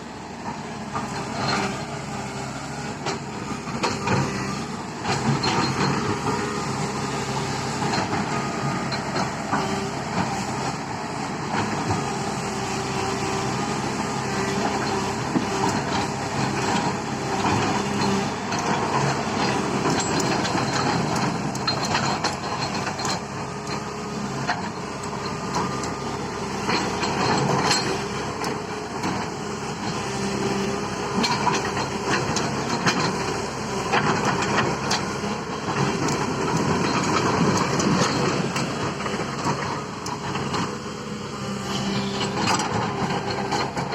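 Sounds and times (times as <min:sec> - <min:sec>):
excavator diesel engine running: 0:00.0 - 0:43.9
metal clanks and knocks: 0:15.6 - 0:26.0, 0:26.6 - 0:35.1.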